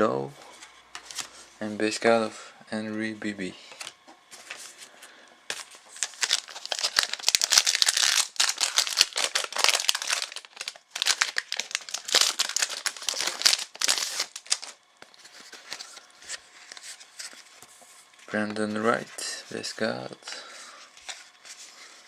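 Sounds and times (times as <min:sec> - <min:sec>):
wrapper crinkling and tearing: 0:05.5 - 0:16.0.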